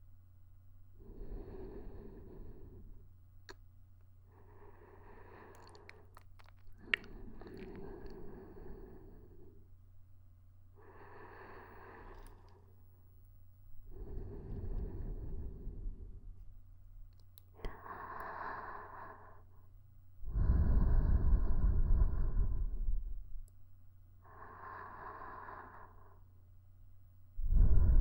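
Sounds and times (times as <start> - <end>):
close breathing into microphone: 1.0 - 3.1, 4.3 - 6.1, 6.7 - 9.7, 10.8 - 12.7, 13.8 - 16.5, 17.6 - 19.6, 20.2 - 23.4, 24.2 - 26.3, 27.4 - 28.0.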